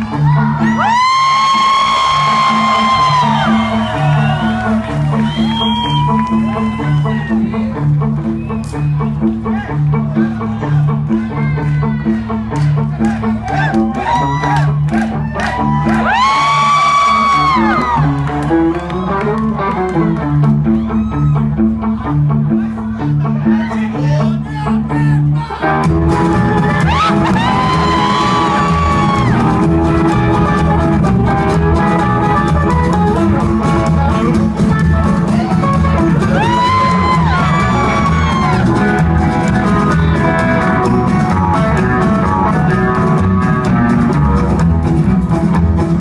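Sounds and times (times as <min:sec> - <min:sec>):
rock band playing live: 0:00.0 - 0:46.0
lead guitar phrases: 0:16.6 - 0:46.0.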